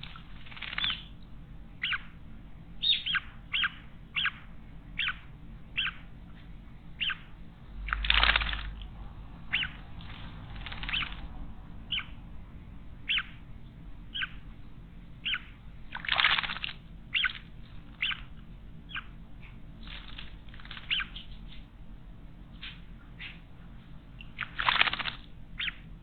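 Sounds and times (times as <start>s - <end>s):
birds splashing in water: 0.0s - 1.1s, 7.9s - 8.9s, 9.5s - 11.3s, 15.9s - 17.4s, 19.8s - 21.2s, 24.2s - 25.7s
bird wing flutters: 8.0s - 8.7s.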